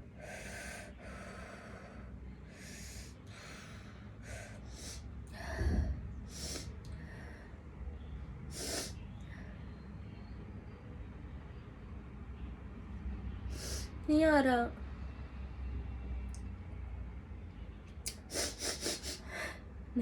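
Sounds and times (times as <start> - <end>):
woman sniffing and gasping: 5.6 - 6.7, 8.5 - 9.0, 13.5 - 13.9, 18.1 - 19.6.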